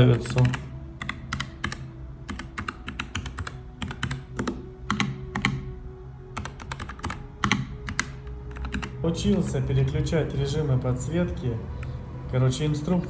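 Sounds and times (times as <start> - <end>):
mechanical keyboard typing: 0.2 - 5.7, 6.4 - 9.0.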